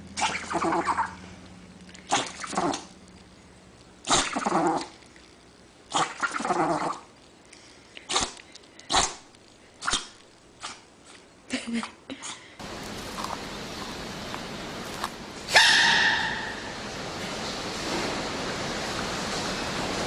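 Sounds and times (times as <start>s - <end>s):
dog sneezing: 4.1s - 4.9s, 15.5s - 16.8s.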